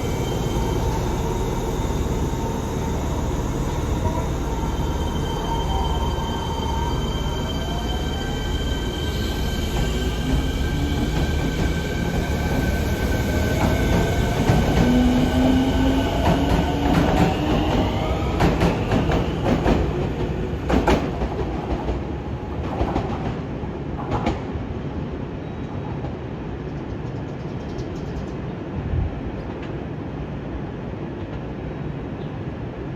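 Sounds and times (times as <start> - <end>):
train drive whine: 0.0 - 21.4.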